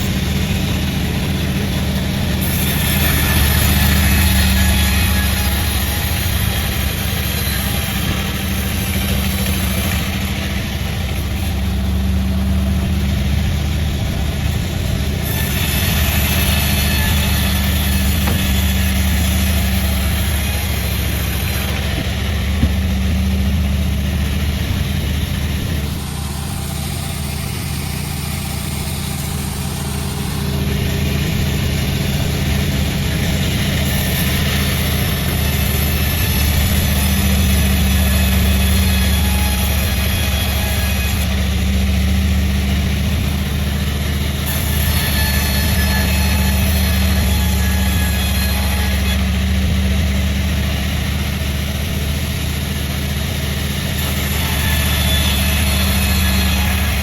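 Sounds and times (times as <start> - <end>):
low engine hum: 0.0 - 57.0
saw cutting through wood: 0.0 - 57.0.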